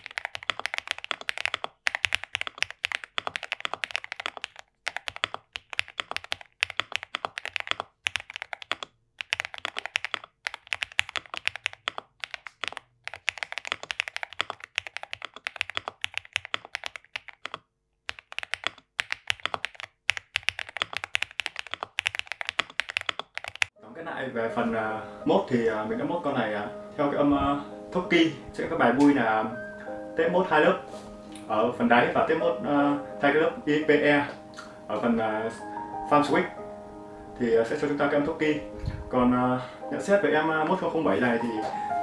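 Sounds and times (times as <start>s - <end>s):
mechanical keyboard typing: 0.0s - 23.8s.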